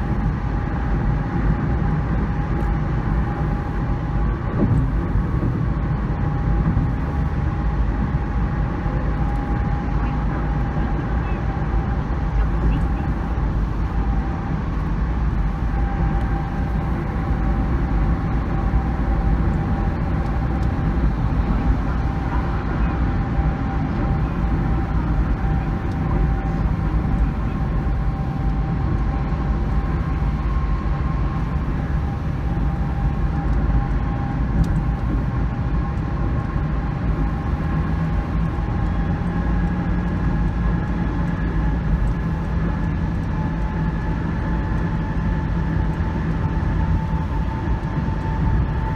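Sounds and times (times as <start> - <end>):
vehicle road rumble: 0.0 - 48.9.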